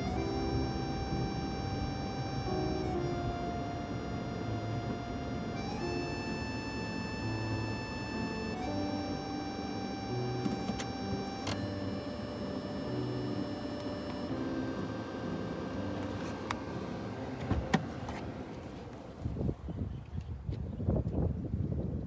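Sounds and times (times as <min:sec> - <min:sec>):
music of sustained notes: 0:00.0 - 0:19.1
sharp clicks: 0:10.4 - 0:12.1.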